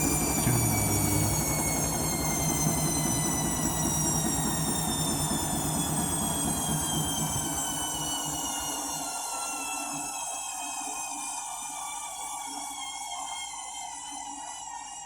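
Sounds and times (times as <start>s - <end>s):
washing machine spin whining: 0.0s - 10.5s.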